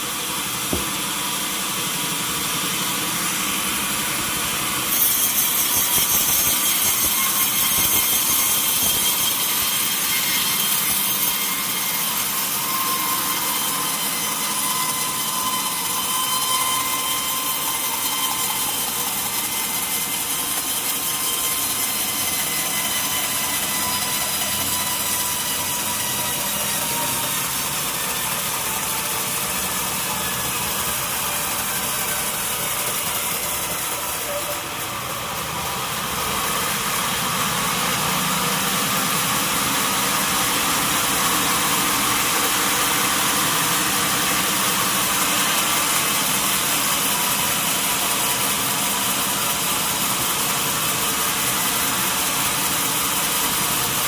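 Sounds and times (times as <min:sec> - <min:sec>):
saw cutting through log: 0:00.0 - 0:54.0.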